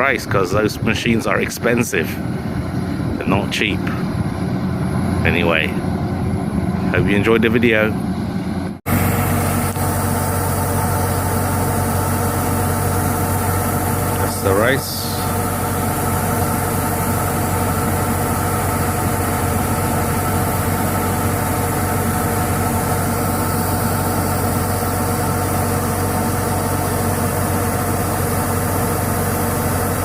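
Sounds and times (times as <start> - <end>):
combine harvester engine running: 0.0 - 30.0.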